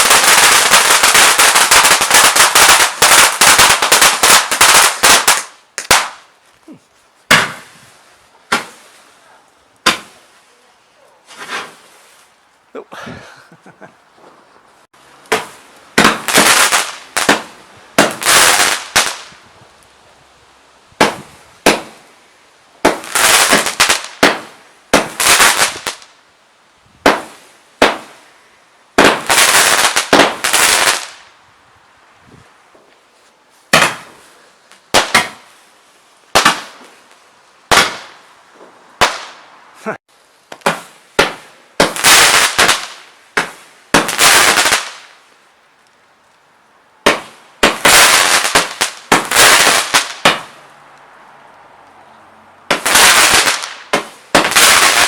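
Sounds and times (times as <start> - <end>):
firework shots banging and hissing: 0.0 - 6.3, 7.3 - 9.2, 9.8 - 10.4, 11.2 - 12.3, 15.2 - 19.4, 21.0 - 22.1, 22.8 - 26.1, 27.0 - 28.3, 28.9 - 31.3, 33.6 - 35.7, 36.3 - 45.2, 47.0 - 50.6, 52.7 - 55.0.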